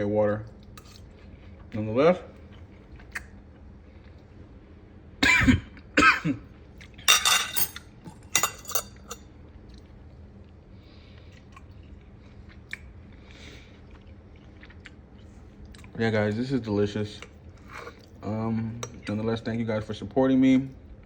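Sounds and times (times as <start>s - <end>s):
person chewing food: 2.4s - 4.3s, 9.6s - 16.0s.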